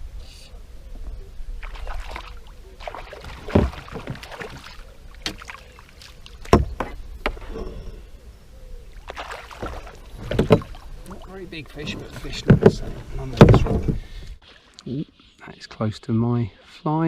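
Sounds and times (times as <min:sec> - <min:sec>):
knocks against boat: 0:03.5 - 0:04.3, 0:06.4 - 0:07.4, 0:10.2 - 0:10.8, 0:11.8 - 0:14.0.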